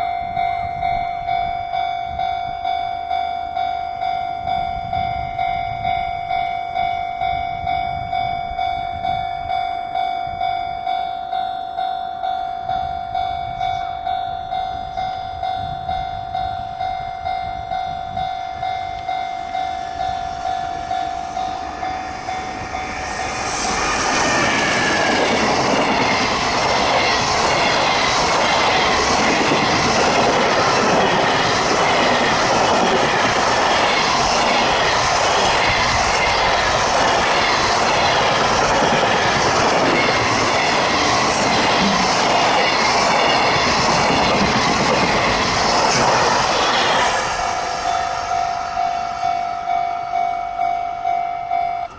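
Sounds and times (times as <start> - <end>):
level crossing alarm bell: 0.0 - 33.6, 47.0 - 51.9
freight train passing: 0.0 - 51.9.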